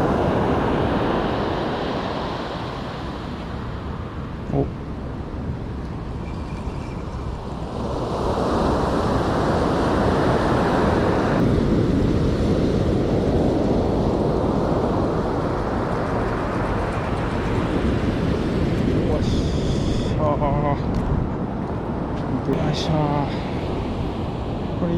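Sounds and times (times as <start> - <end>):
surf breaking on beach: 0.0 - 3.4
wind buffeting microphone: 0.0 - 24.9.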